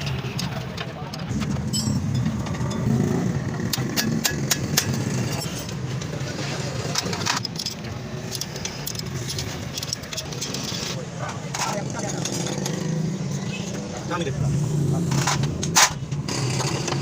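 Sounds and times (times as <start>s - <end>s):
metal tools clinking: 1.3s - 6.1s, 6.8s - 12.9s.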